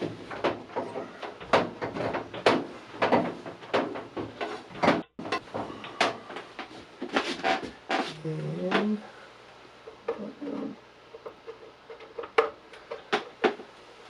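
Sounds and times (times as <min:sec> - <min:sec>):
hard parts knocking and clattering: 0:00.0 - 0:08.0.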